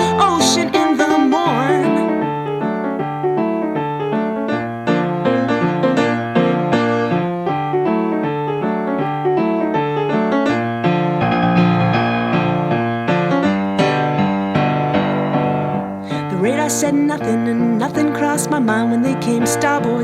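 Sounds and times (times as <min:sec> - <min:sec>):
piano-like keyboard notes: 0:00.0 - 0:20.0.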